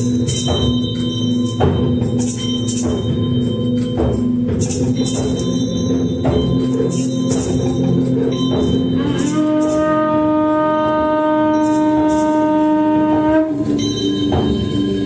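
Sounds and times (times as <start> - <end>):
shaker rattles: 0.0 - 10.5, 11.1 - 12.9
horn-like wind instrument note: 8.9 - 14.1.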